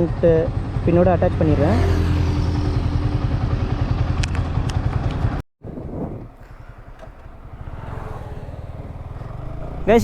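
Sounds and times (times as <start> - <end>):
motorcycle engine rumbling: 0.0 - 10.0
wind noise: 5.6 - 7.9.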